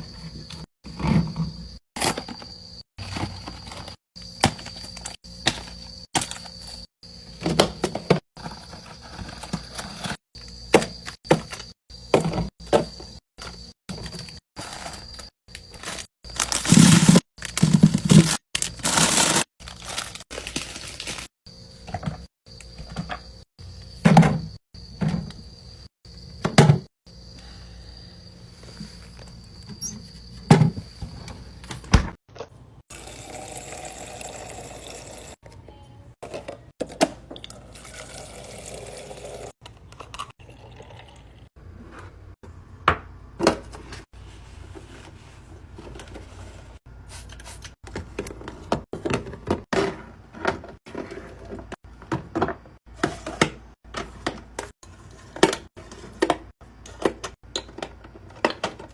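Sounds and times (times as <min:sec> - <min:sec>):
liquid pouring into container: 0:32.9 - 0:35.3, 0:37.4 - 0:41.5.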